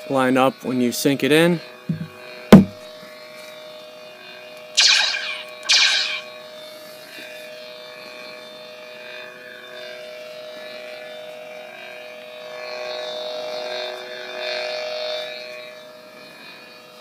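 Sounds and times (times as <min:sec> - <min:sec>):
lightsaber electric hum: 0:04.8 - 0:06.4.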